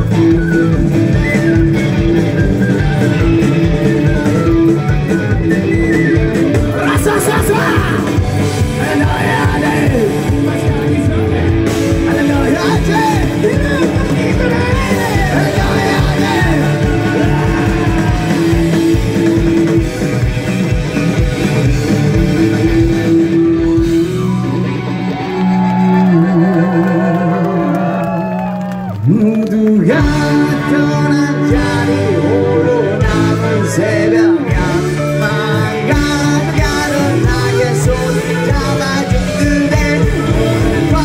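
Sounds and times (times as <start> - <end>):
voices singing along: 0.0 - 19.9, 29.5 - 41.0
driving drum beat: 0.0 - 26.7, 29.4 - 41.0
punk rock band playing: 0.0 - 41.0.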